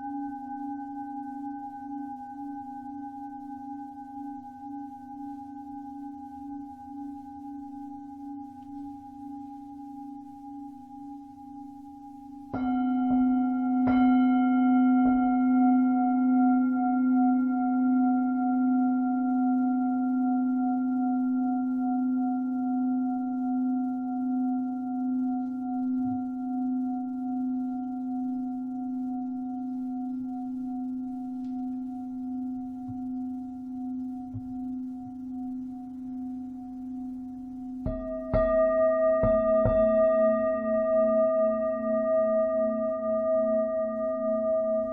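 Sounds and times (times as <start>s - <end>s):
singing bowl struck and ringing: 0.0s - 17.4s, 28.9s - 44.9s.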